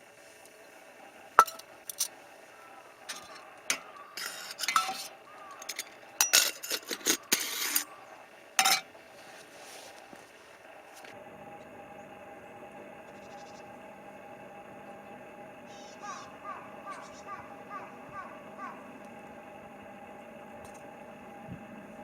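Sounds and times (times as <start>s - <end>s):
cookware clinking: 1.4s - 2.1s, 3.1s - 7.9s, 8.6s - 8.9s
utensils scraping and rattling: 3.0s - 8.0s, 8.6s - 10.0s.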